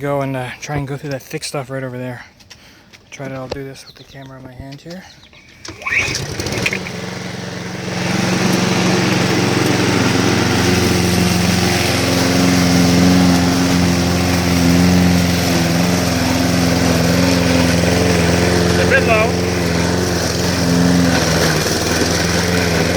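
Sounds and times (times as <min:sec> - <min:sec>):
lawn mower cutting grass: 0:05.6 - 0:22.9.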